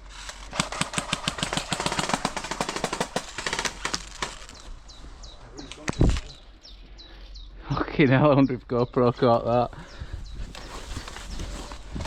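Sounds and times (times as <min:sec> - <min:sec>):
airsoft gun bursts: 0:00.5 - 0:04.4.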